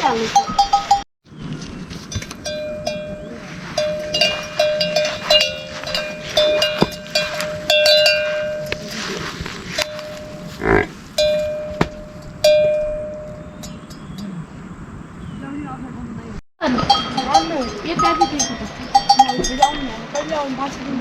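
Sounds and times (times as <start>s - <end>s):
livestock bell clanking: 0.0s - 1.1s, 2.1s - 14.3s, 16.6s - 21.0s.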